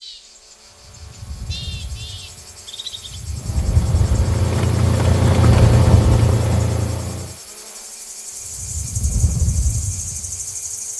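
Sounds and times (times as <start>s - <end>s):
deep rushing whoosh: 3.2s - 7.4s.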